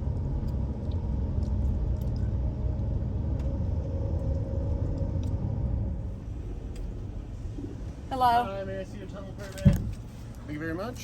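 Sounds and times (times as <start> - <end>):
engine and road noise rumble: 0.0 - 11.0.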